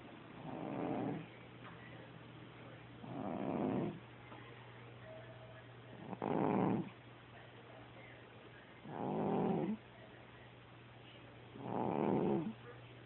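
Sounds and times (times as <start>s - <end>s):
cat snoring: 0.4s - 1.3s, 3.0s - 4.0s, 5.9s - 7.0s, 8.8s - 9.8s, 11.6s - 12.6s.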